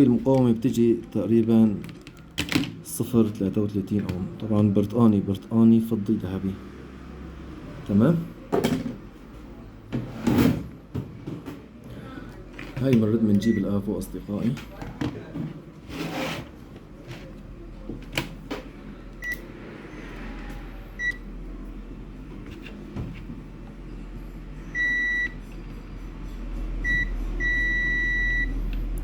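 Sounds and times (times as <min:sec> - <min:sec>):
multimeter continuity beeps: 0:21.0 - 0:21.2, 0:24.7 - 0:25.4, 0:26.8 - 0:28.5.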